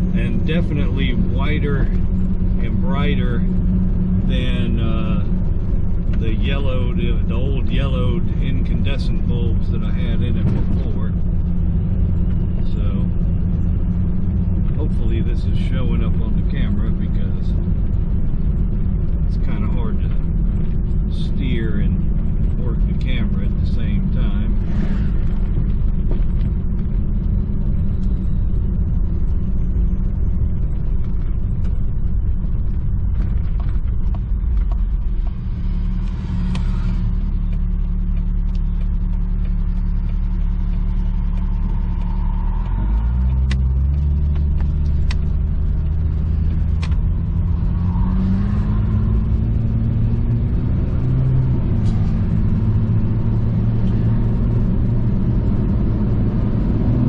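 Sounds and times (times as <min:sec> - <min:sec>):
car engine and road rumble: 0:00.0 - 0:57.0
sharp clicks: 0:37.4 - 0:45.3.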